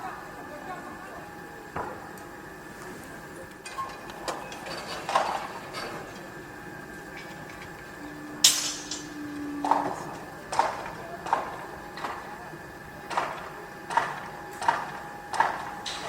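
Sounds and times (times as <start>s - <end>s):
machine hum: 0.0s - 16.0s
low drone: 7.9s - 11.1s.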